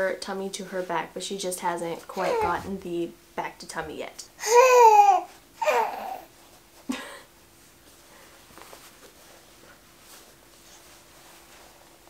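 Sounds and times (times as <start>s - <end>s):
soft faint rustles: 7.5s - 12.0s.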